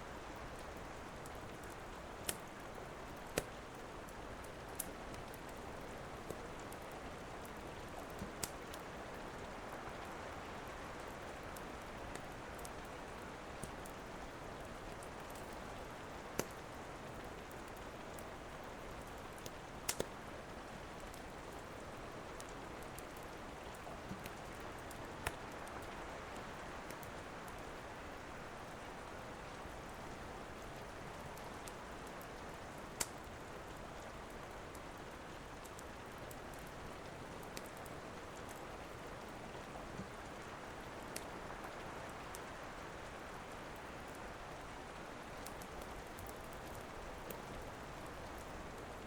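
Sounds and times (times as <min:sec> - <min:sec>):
steady rain: 0:00.0 - 0:49.0
wood fire crackling and popping: 0:00.5 - 0:09.6, 0:11.2 - 0:20.2, 0:20.9 - 0:25.9, 0:30.5 - 0:39.0, 0:39.9 - 0:41.6, 0:45.2 - 0:49.0.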